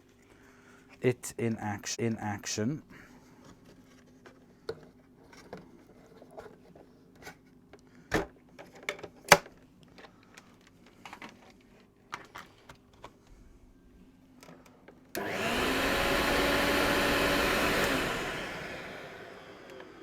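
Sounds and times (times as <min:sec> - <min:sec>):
clicks and taps handling vacuum cleaner: 0:14.4 - 0:20.0.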